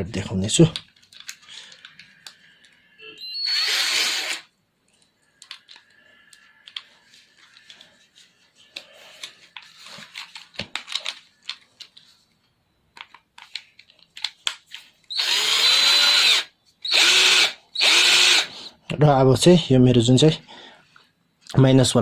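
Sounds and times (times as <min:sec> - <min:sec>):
drill motor spinning: 0:03.2 - 0:04.5, 0:15.1 - 0:18.6
drill bit clicking and rattling: 0:15.1 - 0:18.5.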